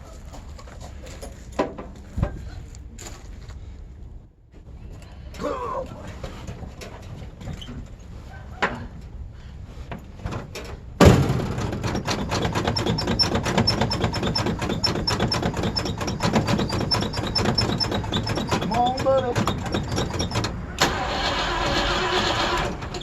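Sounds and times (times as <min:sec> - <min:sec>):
engine starting and running: 0:10.5 - 0:23.0.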